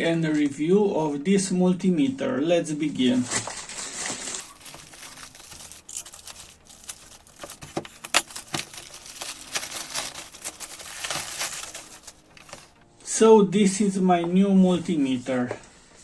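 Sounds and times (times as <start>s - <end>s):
packaging crinkling and rustling: 3.3s - 12.8s
packaging tearing: 3.8s - 12.8s.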